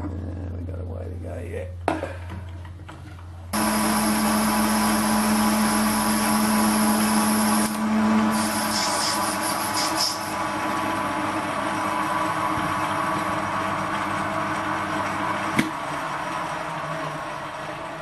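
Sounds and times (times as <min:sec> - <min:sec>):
lathe motor hum: 0:03.6 - 0:08.4.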